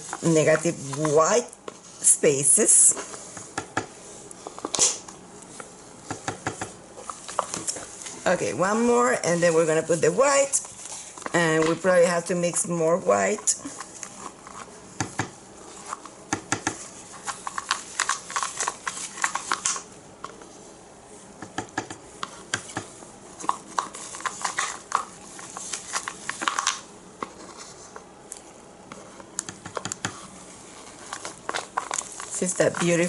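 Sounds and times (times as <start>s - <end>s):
plastic cups clicking and tapping: 16.3s - 19.8s, 21.4s - 27.4s, 29.4s - 30.2s.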